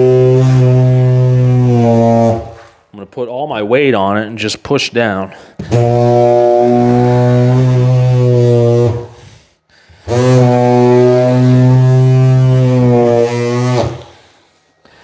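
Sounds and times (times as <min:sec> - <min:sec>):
tile vibrator buzzing: 0:00.0 - 0:02.7, 0:05.6 - 0:09.3, 0:10.0 - 0:14.2.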